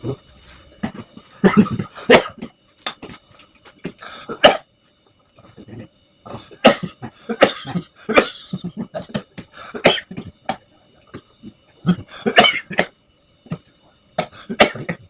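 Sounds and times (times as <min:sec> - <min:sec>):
elderly man coughing: 0:00.8 - 0:02.6, 0:03.8 - 0:04.7, 0:06.3 - 0:12.9, 0:13.5 - 0:15.0.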